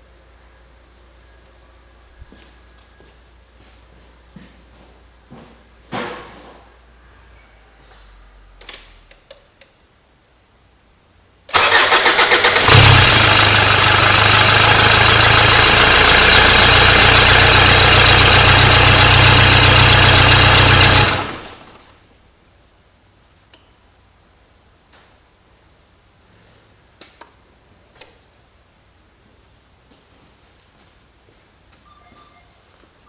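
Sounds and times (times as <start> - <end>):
diesel engine cranking and idling: 11.5 - 21.9.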